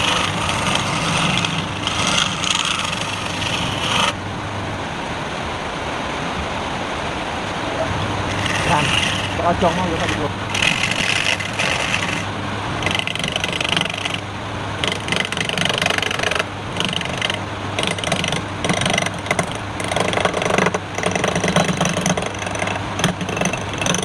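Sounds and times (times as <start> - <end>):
turning tool scraping wood: 0.0 - 4.2, 8.2 - 24.0
wood lathe motor hum: 0.0 - 4.2, 8.1 - 24.0.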